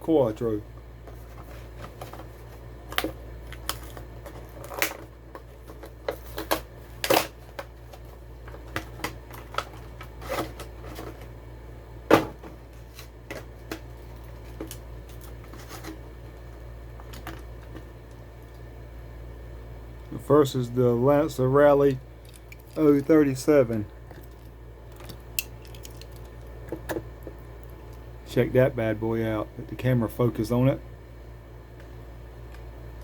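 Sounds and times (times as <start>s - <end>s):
plastic and card packaging crinkling: 1.4s - 11.3s.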